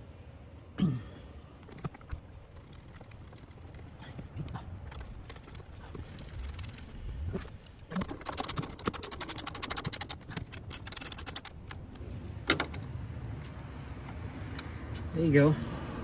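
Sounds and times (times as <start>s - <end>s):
ratchet wrench clicking: 7.6s - 12.7s.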